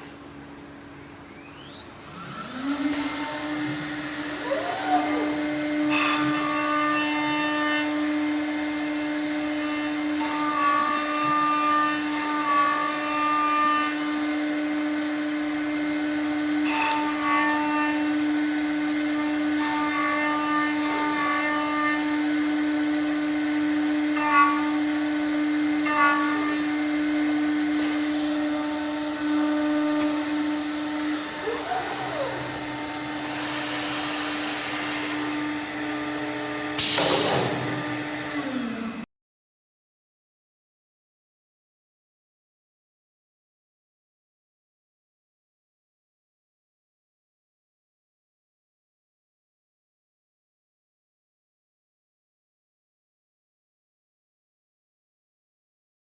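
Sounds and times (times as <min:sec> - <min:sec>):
router spindle whine: 0:00.4 - 0:39.1
machine routing and drilling: 0:00.7 - 0:39.1.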